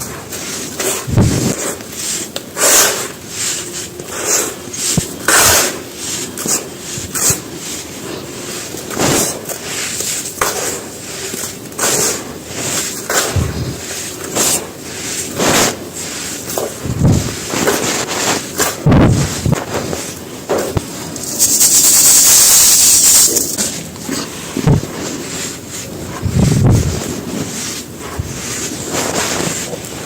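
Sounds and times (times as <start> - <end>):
dull thumps: 13.3 - 13.8, 24.6 - 24.9.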